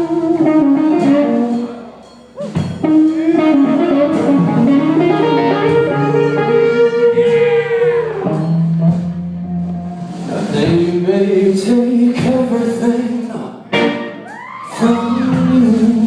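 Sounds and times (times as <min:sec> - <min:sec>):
electric guitar solo: 0:02.4 - 0:10.0, 0:13.7 - 0:15.0.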